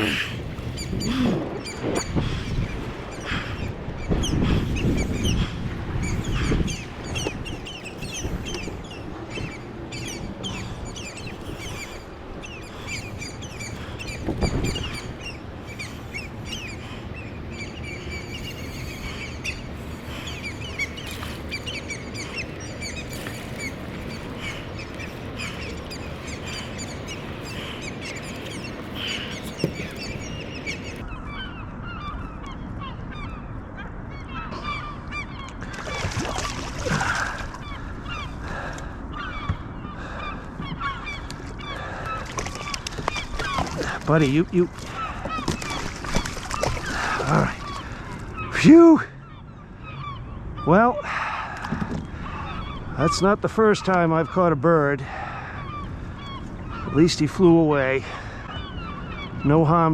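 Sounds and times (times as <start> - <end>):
seagulls squawking: 0.0 - 59.9.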